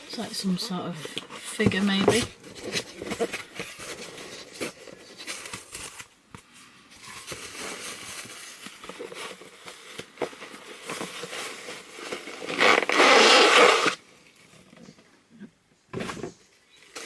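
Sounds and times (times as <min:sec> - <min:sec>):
packaging crinkling and rustling: 0:01.0 - 0:14.8.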